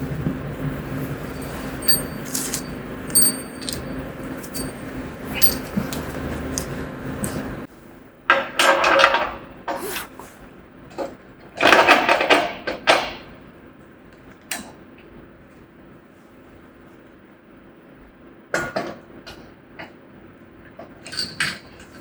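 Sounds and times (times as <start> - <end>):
steel tools clattering and scraping: 0.0 - 7.7.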